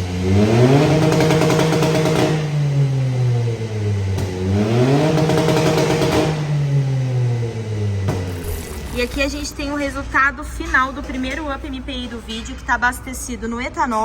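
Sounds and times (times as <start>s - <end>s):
car engine revving: 0.0s - 9.2s.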